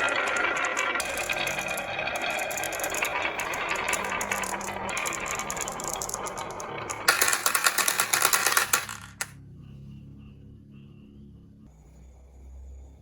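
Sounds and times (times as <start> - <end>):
marbles rolling down wooden run: 0.0 - 9.3.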